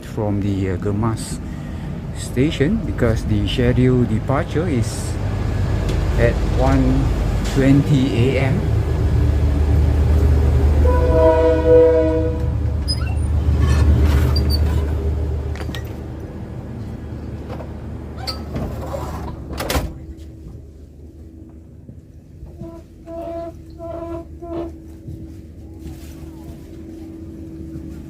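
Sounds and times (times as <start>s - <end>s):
diesel train engine rumble: 0.0s - 28.0s
train horn: 10.8s - 12.7s, 22.5s - 24.9s.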